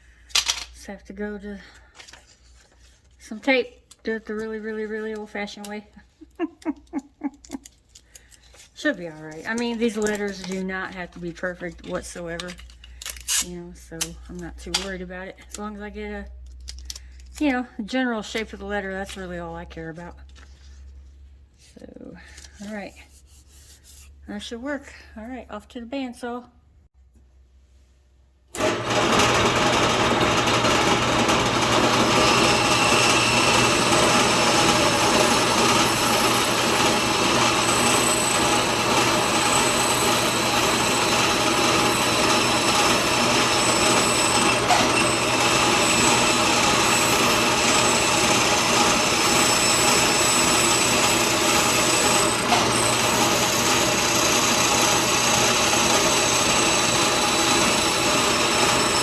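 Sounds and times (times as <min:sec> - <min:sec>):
band saw cutting wood: 0:28.6 - 0:59.0.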